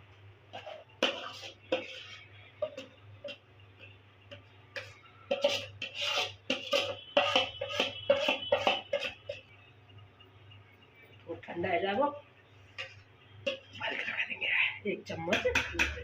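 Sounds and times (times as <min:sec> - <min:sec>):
metal spoon scraping a pan: 0:00.5 - 0:09.7, 0:12.6 - 0:14.3.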